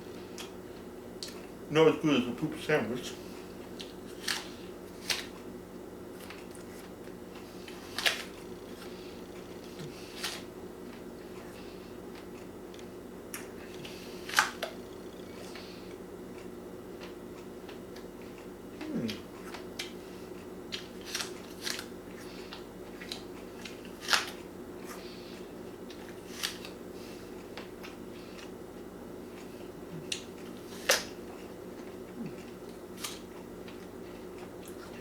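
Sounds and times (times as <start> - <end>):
low hum: 13.6 - 16.1
apple crunching: 20.7 - 21.9, 23.0 - 24.4.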